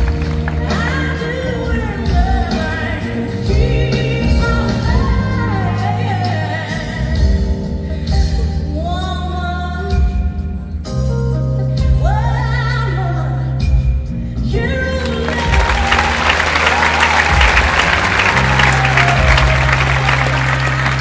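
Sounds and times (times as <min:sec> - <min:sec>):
woman singing pop song: 0:00.5 - 0:10.4, 0:11.8 - 0:16.2
bass and beat: 0:14.6 - 0:21.0.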